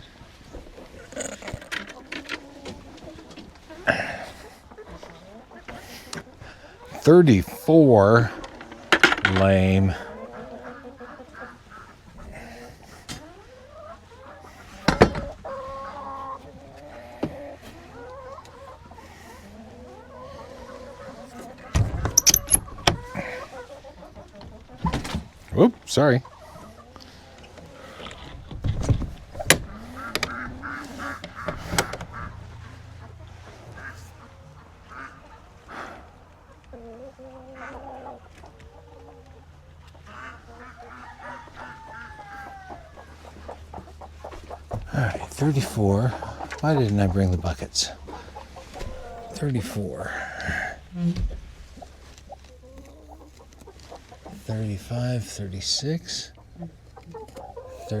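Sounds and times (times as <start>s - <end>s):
hens clucking and calling: 0.0s - 58.0s.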